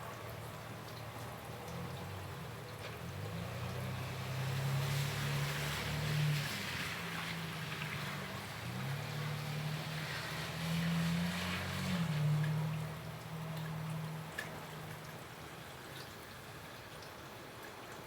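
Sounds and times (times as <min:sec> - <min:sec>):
car passing on wet road: 0:00.8 - 0:16.4
rain hiss: 0:03.2 - 0:12.8.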